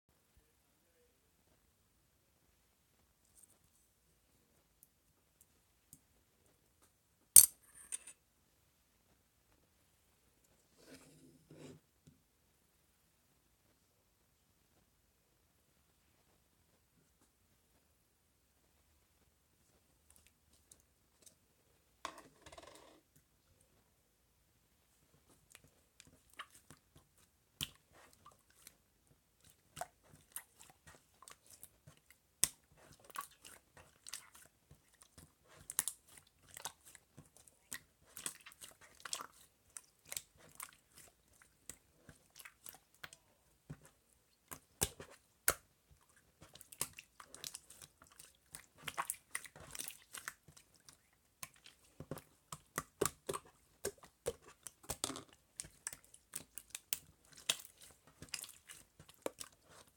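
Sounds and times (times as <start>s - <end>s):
slime squelching with sticky clicks: 25.2s - 59.9s.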